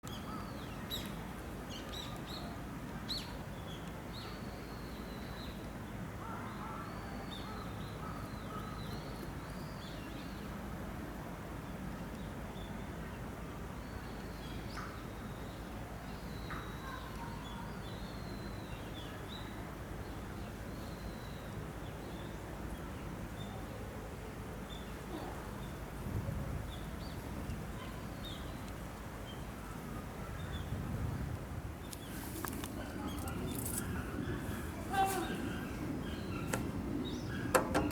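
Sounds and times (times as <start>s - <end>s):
steady low rumble: 31.6s - 37.9s
small birds chirping: 31.8s - 37.9s.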